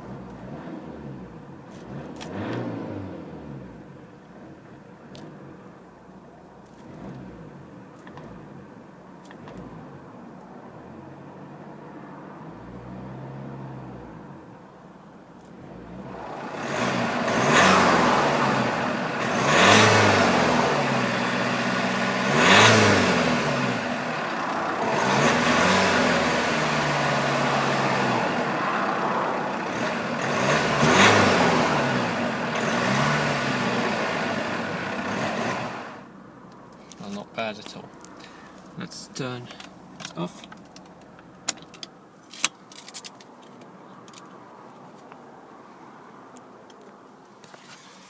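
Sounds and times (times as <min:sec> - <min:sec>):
car engine idling and revving: 0:00.0 - 0:48.0.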